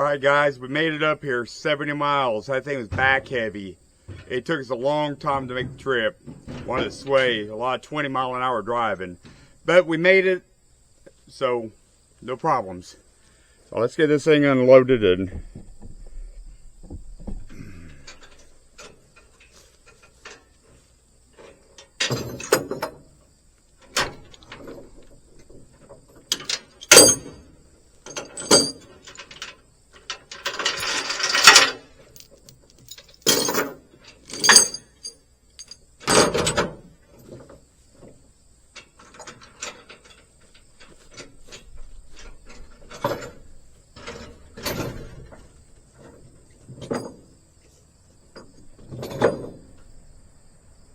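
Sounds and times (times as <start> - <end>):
metal chains clanking: 26.3 - 36.6.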